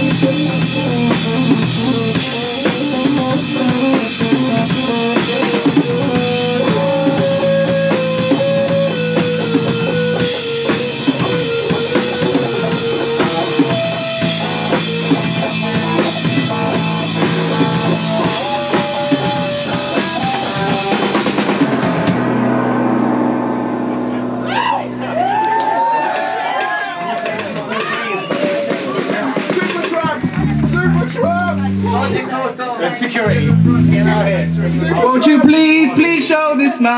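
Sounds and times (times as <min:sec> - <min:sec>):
rock music: 0:00.0 - 0:36.9.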